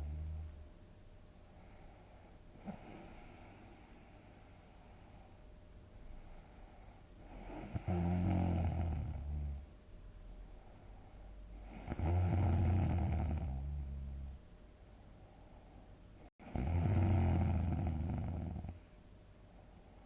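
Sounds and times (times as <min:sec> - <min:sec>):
person snoring heavily: 0:07.3 - 0:09.6, 0:11.6 - 0:14.3, 0:16.4 - 0:18.8.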